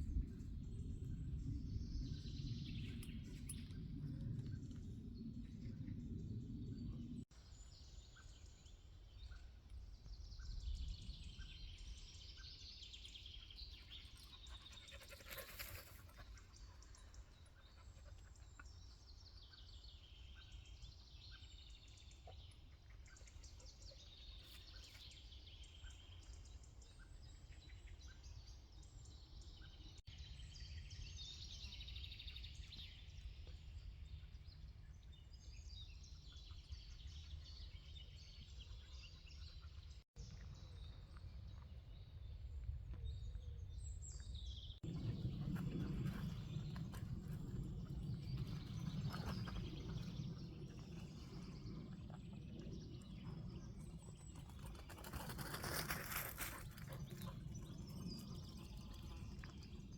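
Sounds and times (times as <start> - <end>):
low steady rumble: 44.8 - 54.4.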